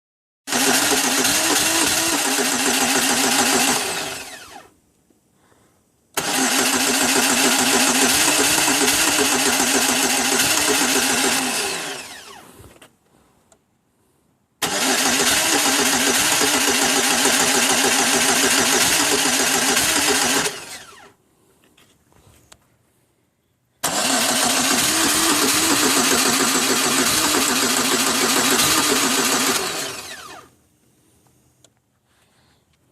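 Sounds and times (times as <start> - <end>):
car starter cranking: 0.5 - 4.7, 6.2 - 12.4, 14.6 - 21.1, 23.8 - 30.5
starter falling whine: 6.2 - 12.9, 14.6 - 21.1, 23.8 - 30.5.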